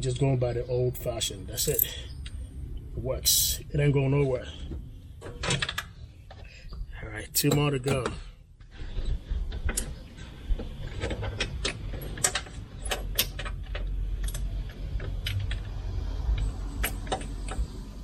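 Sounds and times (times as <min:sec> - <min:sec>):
low steady rumble: 0:00.0 - 0:18.0
light metallic clicks and rattles: 0:01.6 - 0:02.4.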